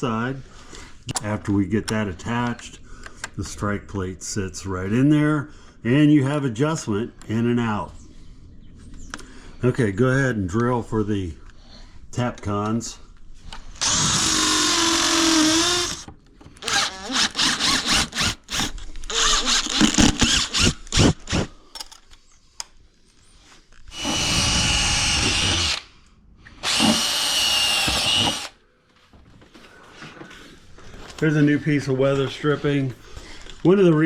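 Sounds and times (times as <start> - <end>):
power drill boring into masonry: 13.8 - 21.9, 23.9 - 25.9, 26.6 - 28.6.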